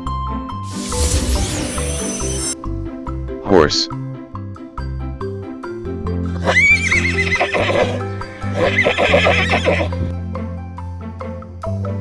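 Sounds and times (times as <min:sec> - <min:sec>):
children's background music: 0:02.6 - 0:12.0
horse neighing: 0:06.4 - 0:10.1.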